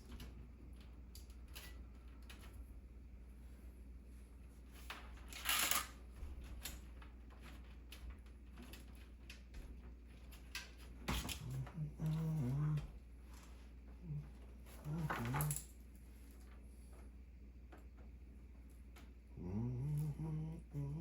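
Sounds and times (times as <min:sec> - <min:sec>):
cables rustling and clicking: 0:04.8 - 0:19.2
man humming or mumbling: 0:19.4 - 0:21.0.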